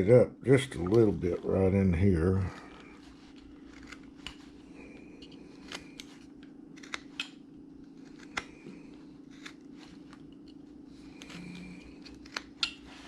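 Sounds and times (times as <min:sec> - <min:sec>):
steady low hum: 0:00.0 - 0:13.0
carving blade cutting wood: 0:03.4 - 0:04.4, 0:06.8 - 0:07.3, 0:07.9 - 0:10.6, 0:11.2 - 0:13.0.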